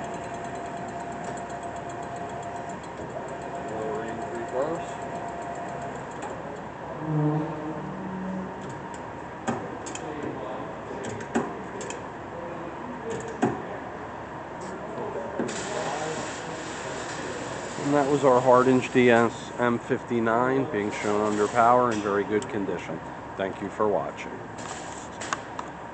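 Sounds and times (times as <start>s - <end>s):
sharp mechanical click: 0.0s - 6.6s, 9.8s - 10.1s
lathe mechanical hum: 0.0s - 25.9s.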